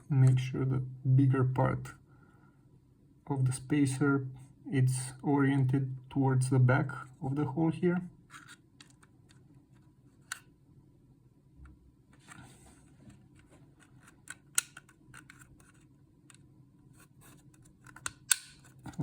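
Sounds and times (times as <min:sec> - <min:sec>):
light plastic scrape: 0:08.3 - 0:10.4, 0:12.1 - 0:14.4, 0:15.1 - 0:15.9
plastic parts clicking: 0:13.8 - 0:16.4.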